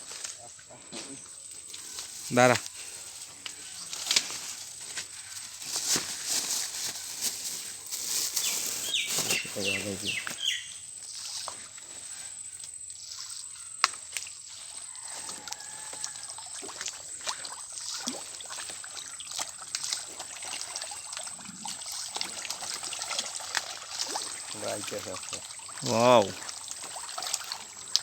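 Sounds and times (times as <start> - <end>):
hands splashing in pond water: 13.8 - 28.0
trickling drips: 14.1 - 28.0.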